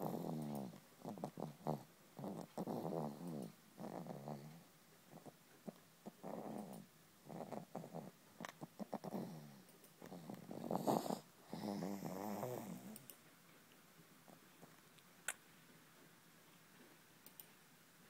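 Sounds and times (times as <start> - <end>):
person snoring: 9.0 - 13.0.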